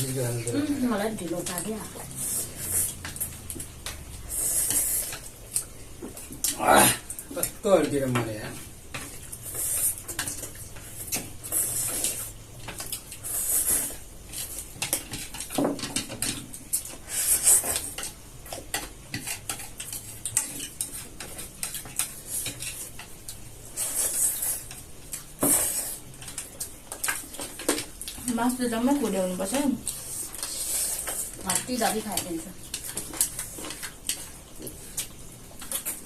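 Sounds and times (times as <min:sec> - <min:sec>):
chopsticks clicking on plates: 0:17.6 - 0:23.5.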